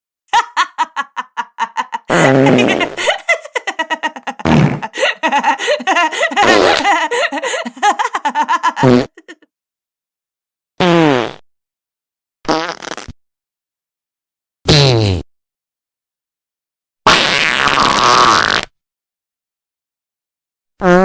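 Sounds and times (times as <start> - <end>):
fart sounds: 4.4 - 4.8, 10.8 - 11.4, 12.5 - 13.1, 17.1 - 18.7.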